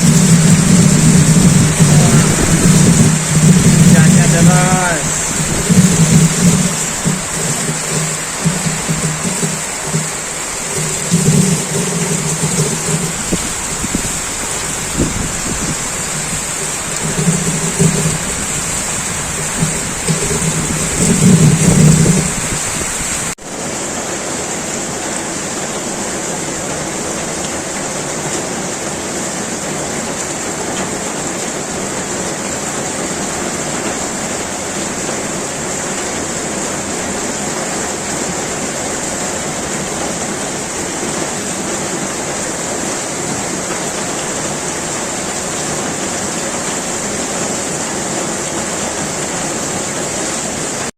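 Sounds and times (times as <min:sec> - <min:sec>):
low pitched sounds: 0:00.0 - 0:23.2
heavy rain pouring: 0:00.0 - 0:50.9.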